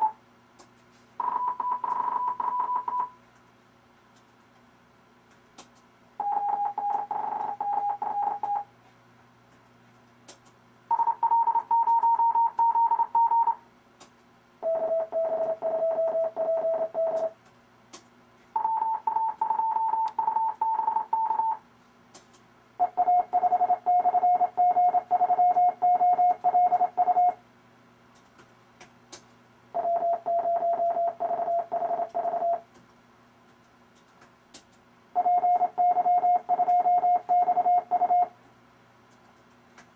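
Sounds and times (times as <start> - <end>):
morse code tones: 1.2 - 3.2, 6.2 - 8.7, 10.9 - 13.6, 14.6 - 17.3, 18.6 - 21.6, 22.8 - 27.4, 29.8 - 32.6, 35.2 - 38.3.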